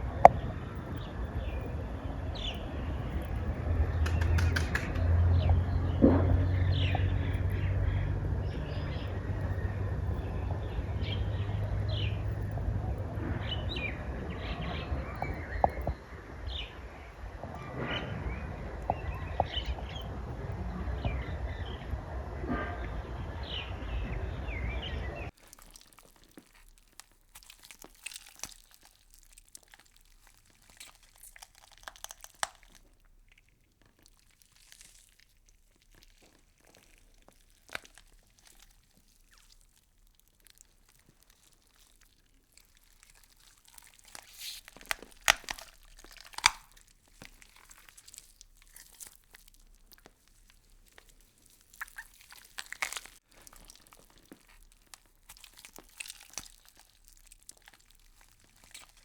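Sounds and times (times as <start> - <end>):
insects chewing leaves: 25.2 - 59.0.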